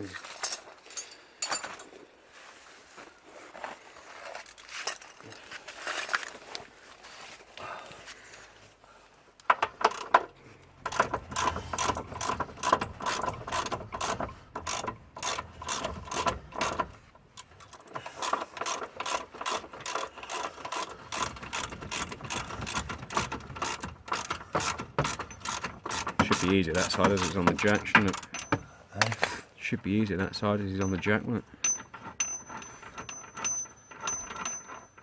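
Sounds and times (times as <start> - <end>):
ratchet wrench clicking: 10.9 - 16.8, 17.7 - 28.6.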